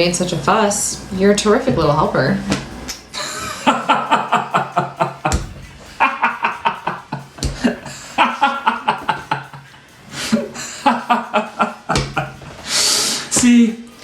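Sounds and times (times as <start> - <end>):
person chuckling: 3.1 - 12.5.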